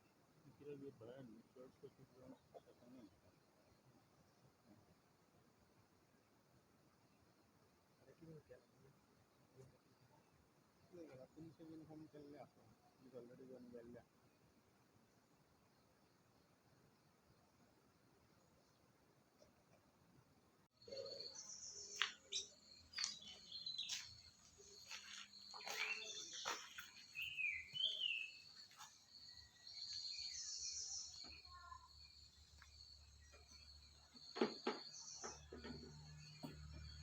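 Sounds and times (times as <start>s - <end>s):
birds chirping and calling: 20.8s - 28.9s.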